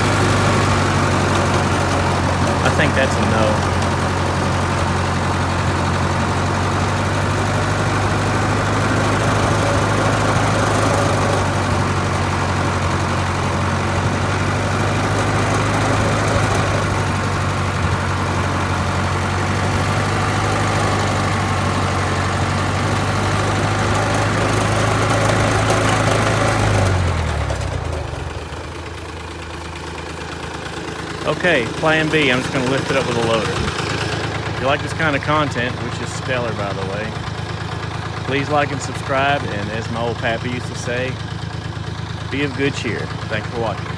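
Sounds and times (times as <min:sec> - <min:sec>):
sawmill engine running: 0:00.0 - 0:43.9.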